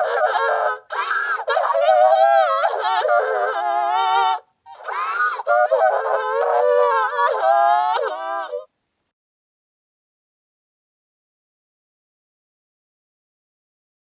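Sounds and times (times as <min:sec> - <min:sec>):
cartoon girl crying wails: 0:00.0 - 0:08.7.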